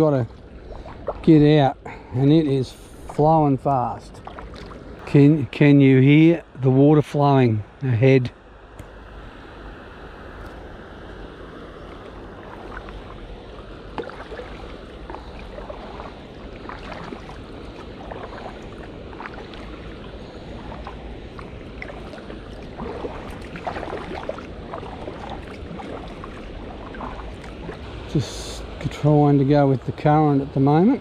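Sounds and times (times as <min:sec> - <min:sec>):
kayak paddle splashing: 0:00.0 - 0:05.3, 0:10.2 - 0:29.5
river water rushing: 0:09.0 - 0:30.7.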